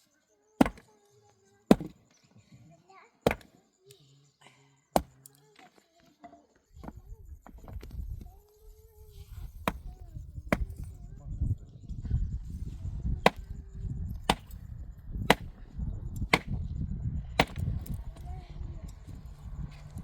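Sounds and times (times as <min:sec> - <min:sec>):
wood being chopped: 0:00.6 - 0:00.9, 0:01.7 - 0:02.0, 0:03.3 - 0:03.6, 0:05.0 - 0:05.2, 0:09.6 - 0:09.9, 0:10.5 - 0:10.7, 0:13.2 - 0:13.5, 0:14.3 - 0:14.6, 0:15.3 - 0:15.6, 0:16.3 - 0:16.6, 0:17.4 - 0:18.0.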